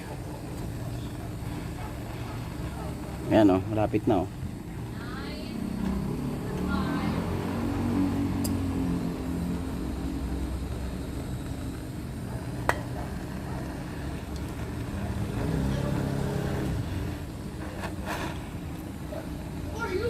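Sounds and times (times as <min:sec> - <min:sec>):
butane torch burning: 0:00.0 - 0:20.0
sharp metallic click: 0:08.4 - 0:08.6.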